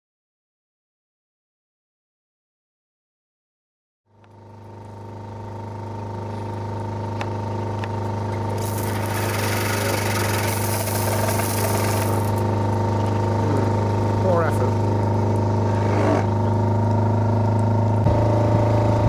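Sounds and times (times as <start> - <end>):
pressure washer humming: 5.9 - 19.0
water jet hissing: 8.4 - 16.7.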